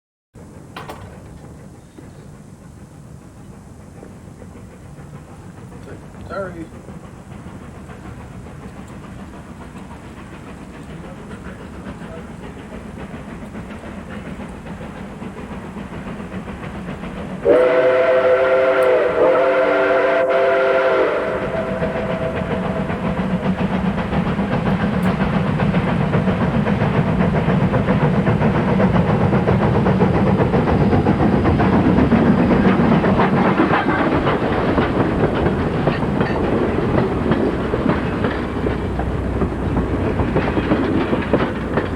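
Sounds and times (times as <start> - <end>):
model train running on rails: 0.4 - 41.9
chime steam whistle: 17.4 - 23.4.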